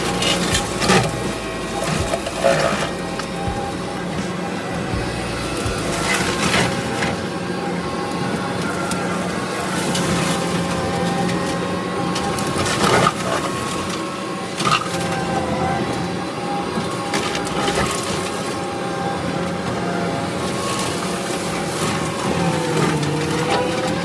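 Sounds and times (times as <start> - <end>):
machine engine drone: 0.0 - 24.0
wood crushing and splintering: 0.0 - 24.0.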